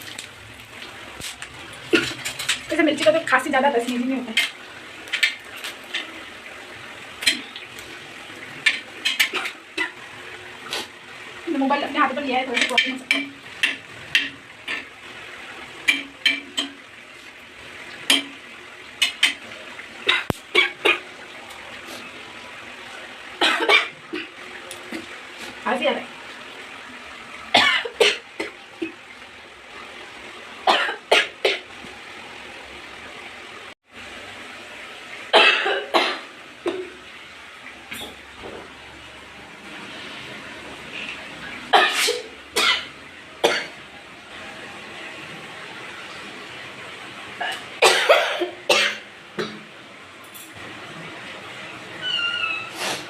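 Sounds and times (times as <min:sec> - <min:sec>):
chillies sizzling in oil: 0:00.0 - 0:30.3
woman coughing: 0:23.4 - 0:23.9, 0:27.6 - 0:28.2, 0:35.4 - 0:36.2, 0:47.8 - 0:49.0.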